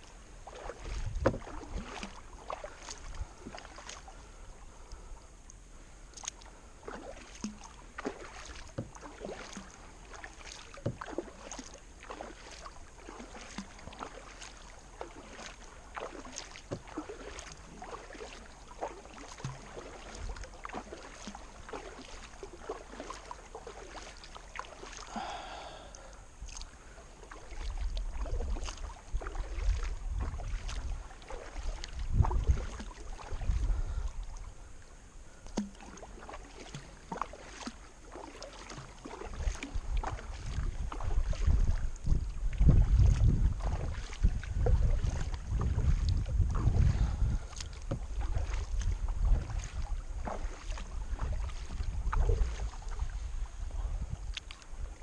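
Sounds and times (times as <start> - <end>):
kayak paddle splashing: 0.0 - 55.0
water dripping off paddle: 0.4 - 4.2, 4.8 - 53.0, 54.2 - 54.8.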